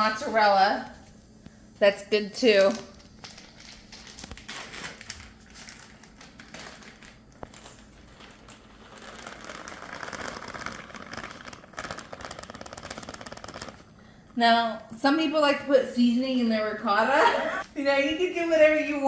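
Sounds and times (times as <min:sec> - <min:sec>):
plastic bag crinkling: 0:02.4 - 0:14.2.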